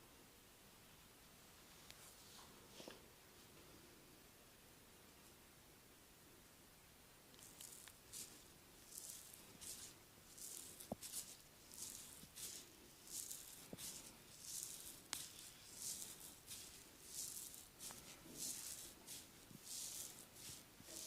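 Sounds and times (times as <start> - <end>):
hands rubbing over skin: 7.4 - 21.0.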